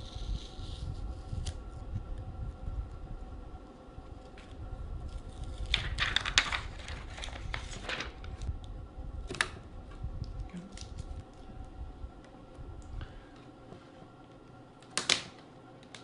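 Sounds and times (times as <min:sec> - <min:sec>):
plastic crackling: 0:05.2 - 0:08.5.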